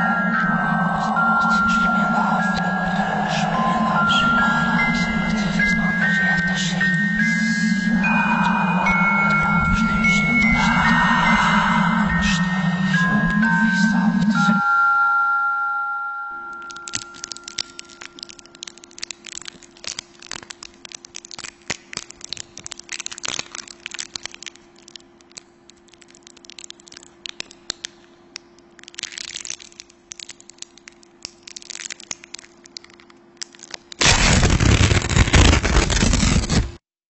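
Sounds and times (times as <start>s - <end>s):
faint steady hum: 0.0s - 36.8s
crackling with sharp cracks: 16.6s - 36.8s
loud burst of noise: 34.0s - 36.8s.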